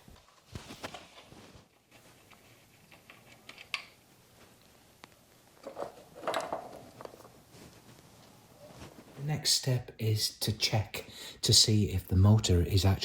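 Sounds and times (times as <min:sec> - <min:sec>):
small parts and tools clicking: 0:02.2 - 0:04.0
clattering noises: 0:05.5 - 0:09.2.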